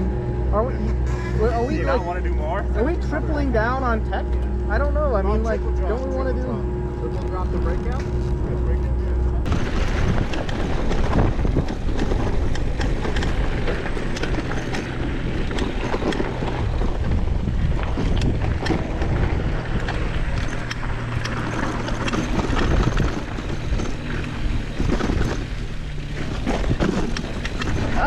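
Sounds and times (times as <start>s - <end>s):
wind buffeting microphone: 0.0s - 28.0s
bike tyre noise: 7.0s - 28.0s
bike rattles and knocks: 9.5s - 28.0s.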